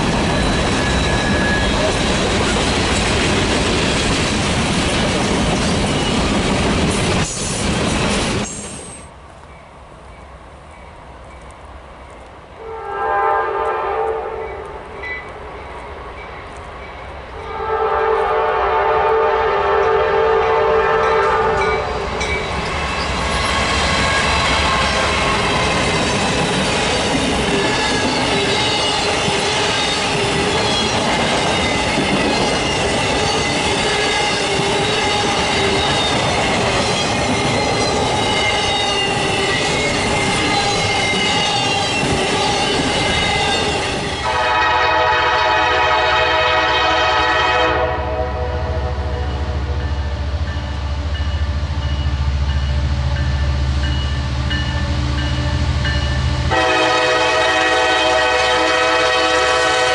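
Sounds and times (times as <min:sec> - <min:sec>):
train cars rumbling past: 0:00.0 - 0:59.9
high-pitched wheel squeal: 0:00.3 - 0:02.0
locomotive air horn blasts: 0:12.6 - 0:14.6, 0:17.5 - 0:21.9, 0:44.2 - 0:49.7, 0:56.5 - 0:59.9.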